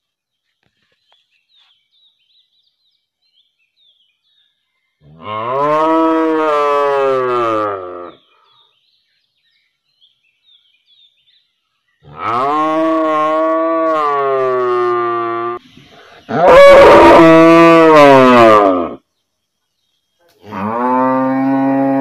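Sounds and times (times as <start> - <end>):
cow mooing: 5.1 - 8.2, 12.1 - 15.6, 16.3 - 19.0, 20.5 - 22.0.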